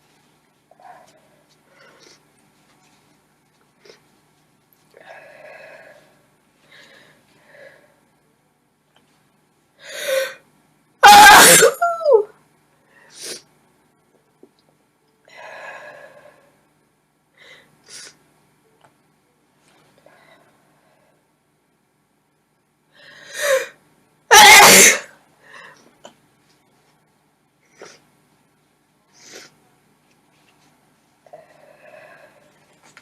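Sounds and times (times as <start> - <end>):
woman sneezing: 11.0 - 12.3, 24.3 - 25.1.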